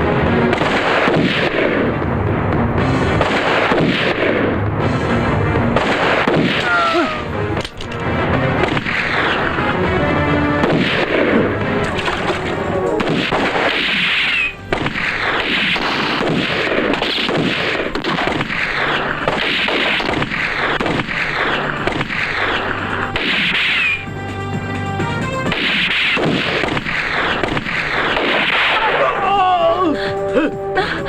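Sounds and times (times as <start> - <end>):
background music: 0.0 - 31.0
gunshot volleys: 0.4 - 2.0, 3.1 - 4.6, 5.7 - 9.6, 10.6 - 24.0, 25.5 - 29.0.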